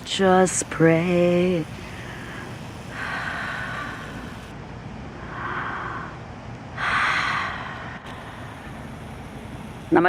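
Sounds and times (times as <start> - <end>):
person breathing: 1.7 - 4.5, 5.2 - 9.8.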